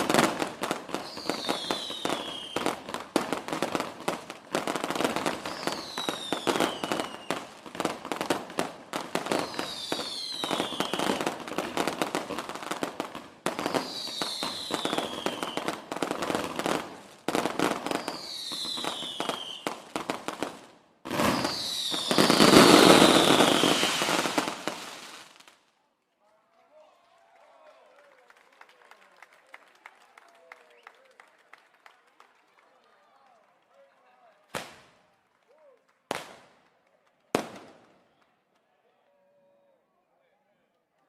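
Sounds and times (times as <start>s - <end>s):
fireworks crackling and popping: 0.0s - 25.8s, 34.5s - 35.4s, 36.0s - 38.1s.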